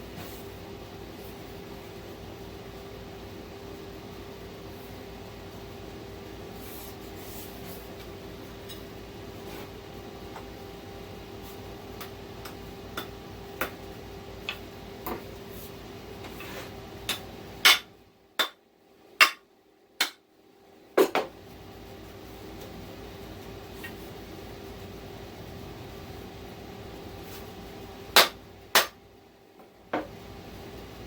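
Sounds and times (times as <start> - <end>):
hammer striking steel wedge: 17.0 - 18.6, 19.2 - 20.2, 28.2 - 29.0.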